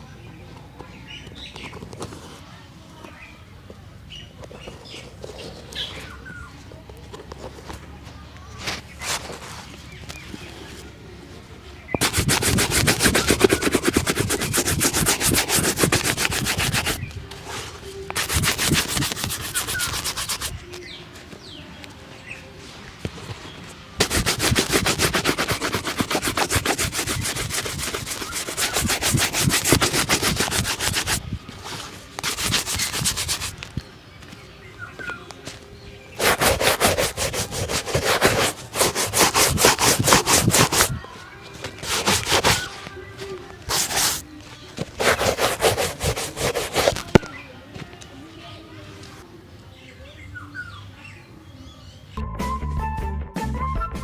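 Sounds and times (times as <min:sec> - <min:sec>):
brush scrubbing a shoe: 0:12.0 - 0:17.1, 0:18.1 - 0:20.6, 0:24.0 - 0:31.2, 0:31.8 - 0:33.6, 0:36.2 - 0:41.0, 0:41.8 - 0:42.8, 0:43.6 - 0:44.2, 0:44.8 - 0:47.3.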